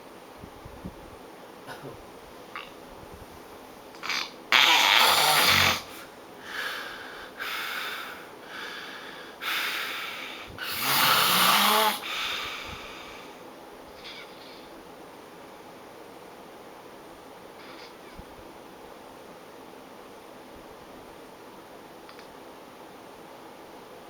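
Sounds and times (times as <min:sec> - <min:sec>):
person snoring loudly: 0:04.0 - 0:06.0, 0:10.6 - 0:12.4.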